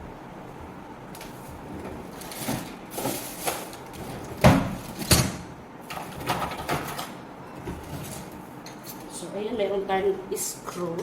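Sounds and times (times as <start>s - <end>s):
hard objects knocking and clattering: 2.4s - 8.2s.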